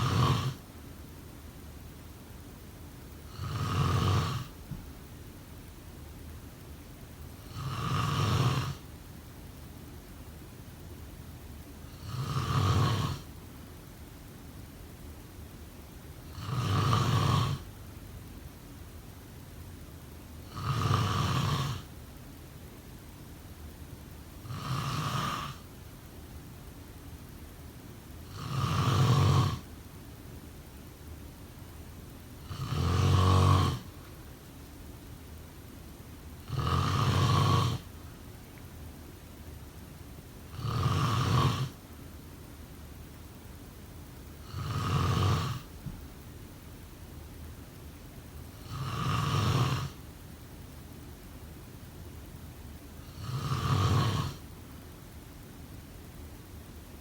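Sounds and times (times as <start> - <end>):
person snoring: 0.0 - 0.6, 3.3 - 4.6, 7.5 - 8.8, 11.9 - 13.3, 16.3 - 17.7, 20.4 - 21.9, 24.4 - 25.6, 28.3 - 29.7, 32.4 - 33.9, 36.4 - 37.9, 40.5 - 41.8, 44.4 - 45.8, 48.6 - 50.0, 53.0 - 54.4.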